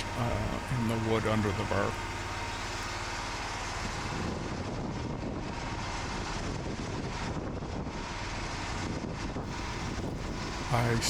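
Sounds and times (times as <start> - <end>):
sawmill engine running: 0.0 - 6.0, 9.5 - 11.0.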